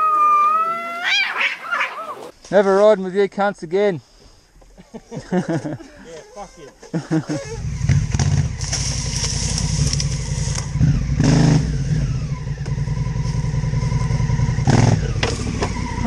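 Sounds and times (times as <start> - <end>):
motorcycle engine running: 7.4 - 16.0.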